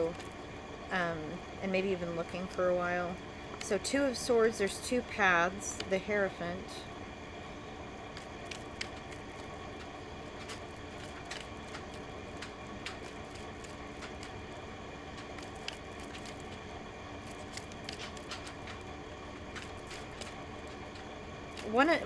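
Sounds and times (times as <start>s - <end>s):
steady room hum: 0.0s - 22.0s
cards clicking and tapping: 8.1s - 22.0s.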